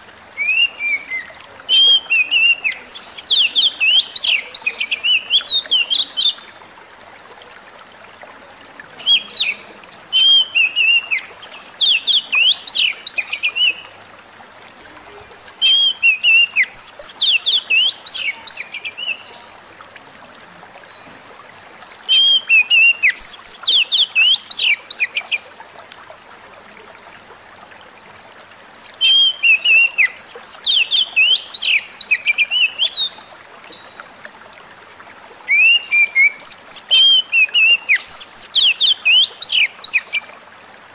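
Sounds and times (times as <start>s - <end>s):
bird singing rapid chirps and whistles: 0.4s - 6.4s, 28.8s - 33.2s, 35.5s - 40.3s.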